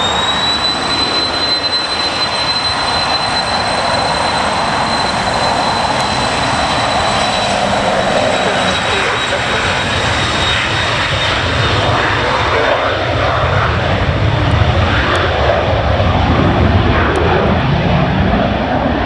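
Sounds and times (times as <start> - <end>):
jet engines roaring: 0.0 - 19.0.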